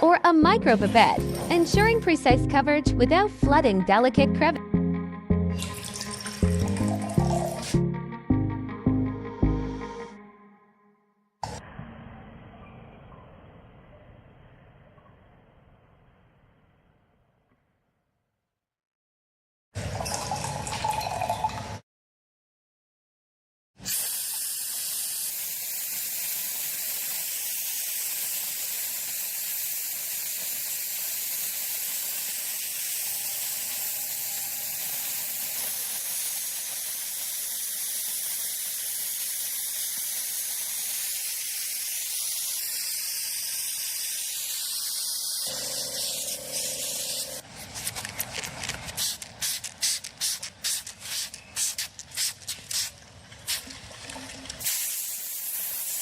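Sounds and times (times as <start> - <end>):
airbrush spraying hiss: 23.9 - 47.4, 48.9 - 52.9, 54.6 - 56.0.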